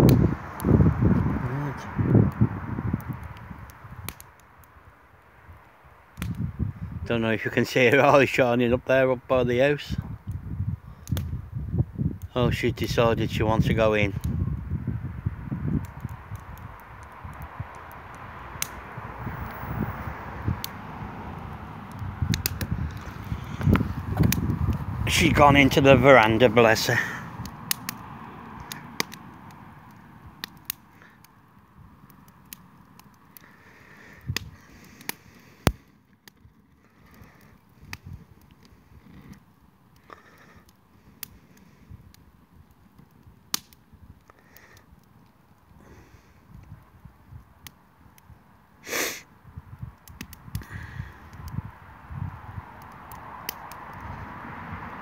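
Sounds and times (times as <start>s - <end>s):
sharp pops from fire: 0.0s - 0.8s, 1.4s - 6.8s, 10.0s - 11.4s, 14.1s - 25.8s, 26.5s - 55.0s
wood fire crackling: 0.0s - 55.0s
burst of breathy noise: 33.4s - 36.0s, 45.8s - 46.5s, 48.8s - 49.3s, 50.6s - 51.3s.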